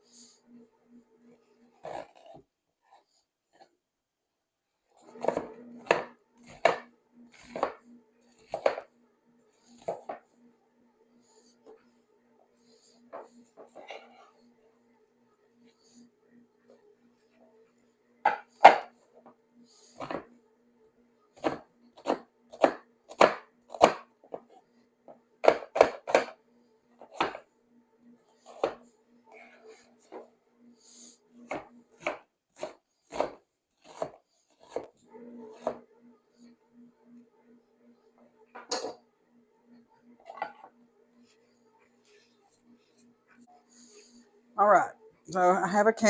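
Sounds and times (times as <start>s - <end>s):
faint steady hum: 0.0s - 46.0s
knife chopping on board: 5.1s - 7.8s, 8.5s - 8.8s, 20.0s - 20.3s, 21.4s - 24.1s, 25.4s - 26.4s, 27.0s - 27.4s, 28.5s - 28.8s, 31.5s - 34.9s.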